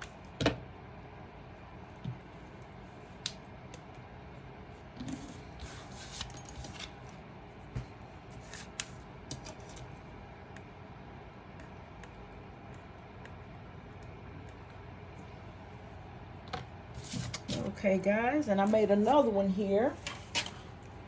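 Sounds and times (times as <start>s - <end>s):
paper rustling: 17.0s - 17.7s.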